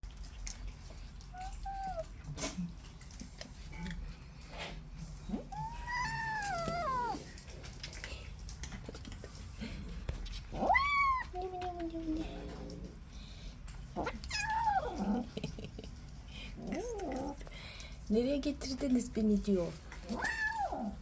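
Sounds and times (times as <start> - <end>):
kitten meowing: 5.5 - 7.2, 10.6 - 11.7, 20.1 - 20.8
light clicks and taps: 6.3 - 10.4.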